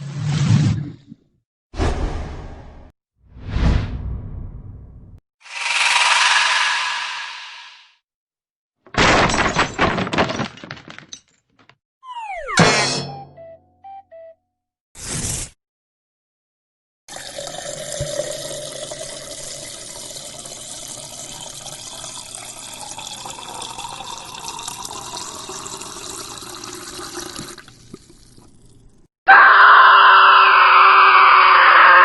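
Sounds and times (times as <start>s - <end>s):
liquid pouring into glass: 17.1s - 28.7s
person screaming: 29.3s - 32.0s.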